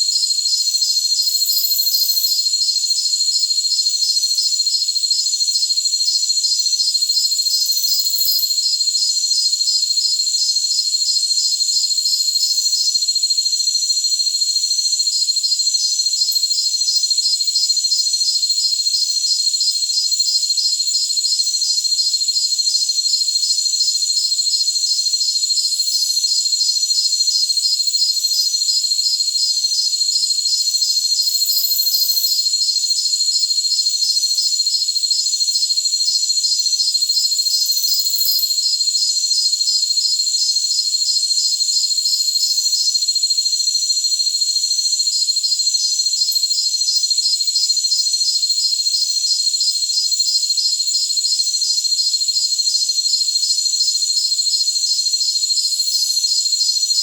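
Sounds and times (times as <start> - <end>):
crickets trilling: 0.0 - 57.0
insect pulsed chirping: 0.1 - 4.5, 5.8 - 12.7, 23.0 - 49.1.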